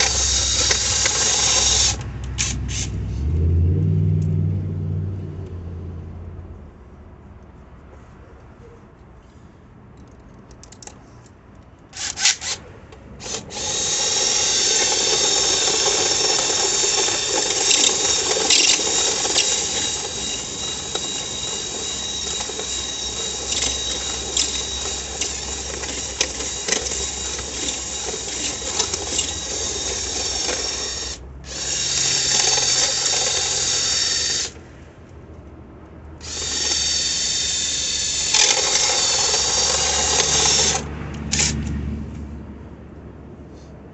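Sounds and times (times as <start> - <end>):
power drill spinning a brush: 0.0 - 3.2, 13.2 - 34.6, 36.2 - 41.5.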